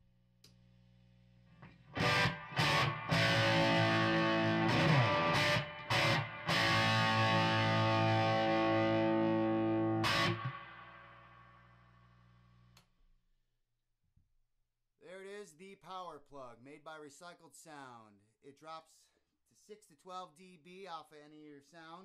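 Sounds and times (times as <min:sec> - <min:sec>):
distorted electric guitar chords: 0:01.6 - 0:12.1.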